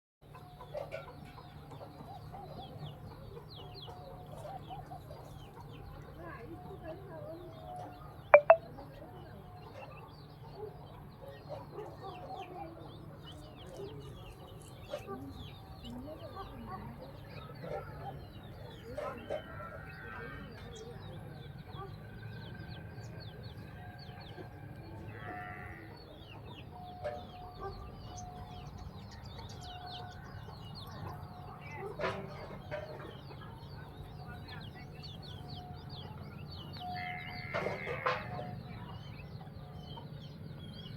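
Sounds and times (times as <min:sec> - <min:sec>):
chickens clucking: 0:08.4 - 0:08.6
short high chirps: 0:08.4 - 0:08.6.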